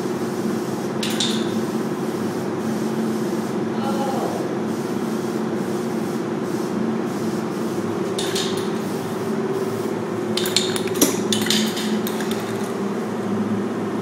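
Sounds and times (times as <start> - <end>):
metallic clinking and rattling: 10.4 - 12.8.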